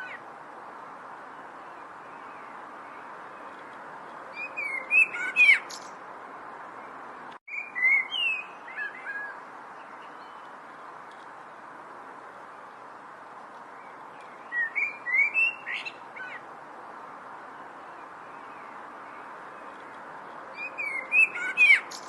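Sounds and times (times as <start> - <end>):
songbird chirps and whistles: 4.3 - 6.0, 7.5 - 10.5, 13.8 - 16.4, 20.5 - 22.0.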